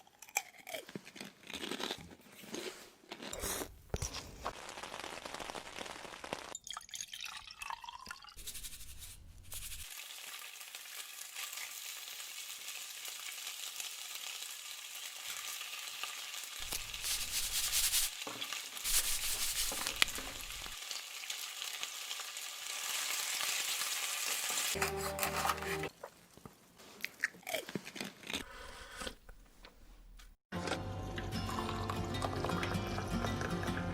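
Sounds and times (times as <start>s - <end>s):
food crunching and chewing: 0.0s - 6.6s, 22.8s - 29.4s, 31.4s - 33.9s.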